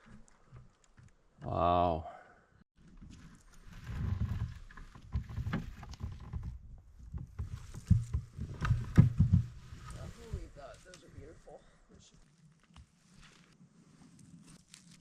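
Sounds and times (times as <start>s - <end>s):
rustling undergrowth: 2.8s - 15.0s.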